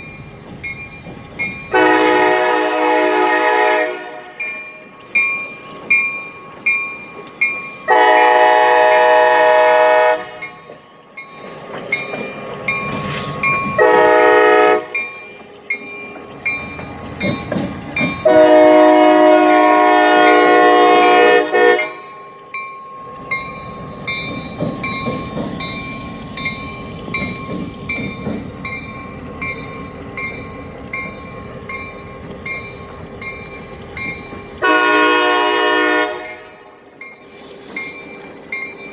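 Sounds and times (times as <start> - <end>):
train rumbling past: 0.0 - 38.9
locomotive air horn: 1.7 - 4.6, 7.9 - 10.5, 13.8 - 15.0, 18.2 - 22.1, 34.6 - 36.8
bell dinging: 21.8 - 34.6.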